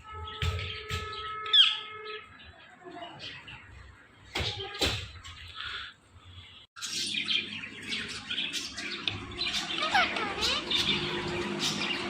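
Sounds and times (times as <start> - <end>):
parakeet chirping and whistling: 8.1 - 12.0.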